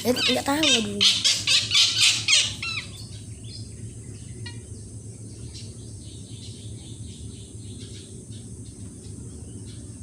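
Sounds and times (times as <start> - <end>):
high bird chirps: 0.0 - 4.8
steady low hum: 0.0 - 10.0.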